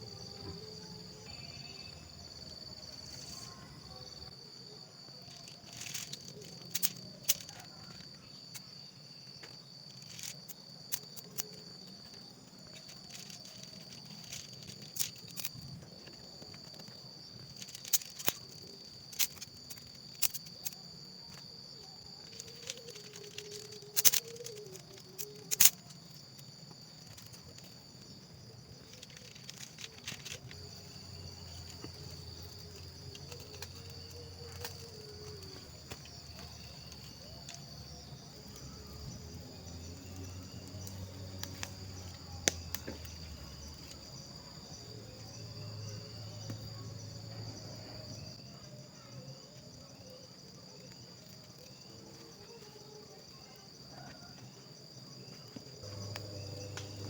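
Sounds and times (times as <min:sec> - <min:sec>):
insects droning: 0:00.0 - 0:57.0
sharp clicks and snaps: 0:22.2 - 0:26.2.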